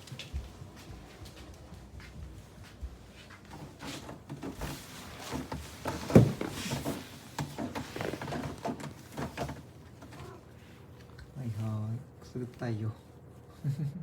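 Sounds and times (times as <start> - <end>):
soft rustling: 0.0 - 13.5.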